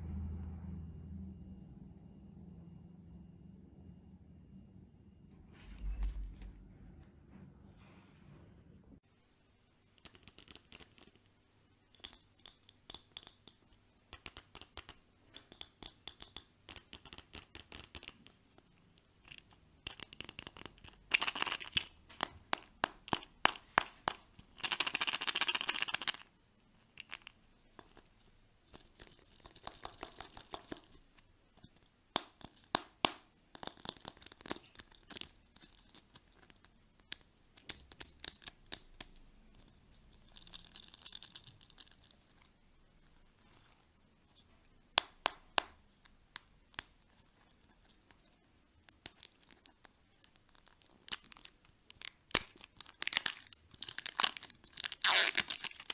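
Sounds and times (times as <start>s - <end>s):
plastic packaging crackling: 48.2s - 55.9s
plastic tearing: 48.9s - 55.9s.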